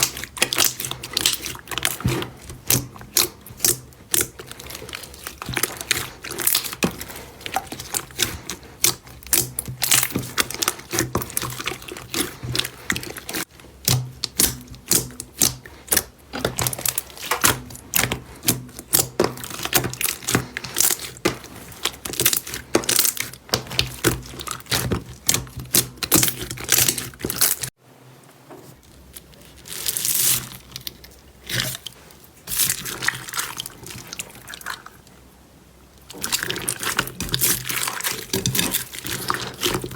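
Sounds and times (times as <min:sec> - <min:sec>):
slime crackling and popping: 0:00.0 - 0:27.7
slime squishing: 0:00.0 - 0:27.8, 0:28.7 - 0:35.2, 0:36.0 - 0:39.9.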